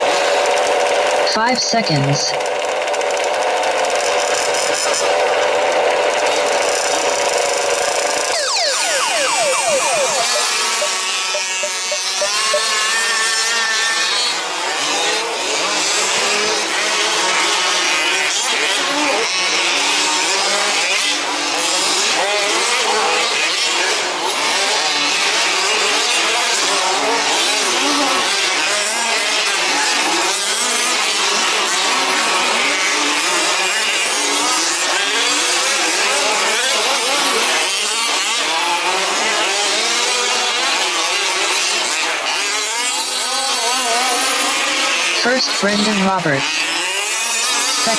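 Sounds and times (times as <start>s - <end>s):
small two-stroke engines racing: 0.0s - 47.9s.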